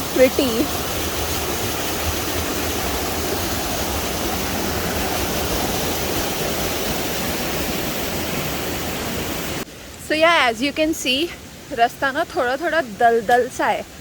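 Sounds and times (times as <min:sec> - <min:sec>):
stream water rushing: 0:00.0 - 0:14.0.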